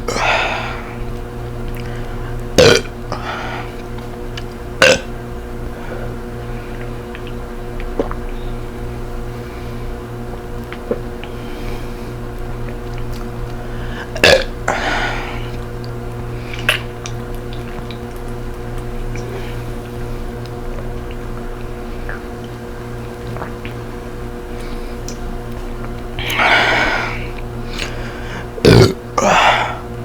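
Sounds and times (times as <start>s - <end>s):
woman burping: 2.6s - 2.9s, 4.8s - 5.1s, 14.1s - 14.8s, 28.6s - 29.8s
woman swallowing gulps: 6.3s - 8.4s, 10.6s - 11.4s, 16.6s - 29.9s.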